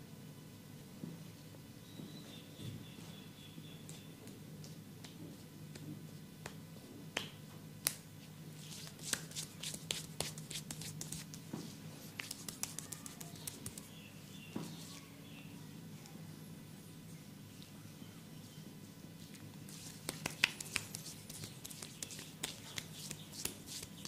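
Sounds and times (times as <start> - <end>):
massage clicks and light slaps: 3.9 - 8.1, 8.8 - 11.4, 12.2 - 13.9, 19.7 - 24.0.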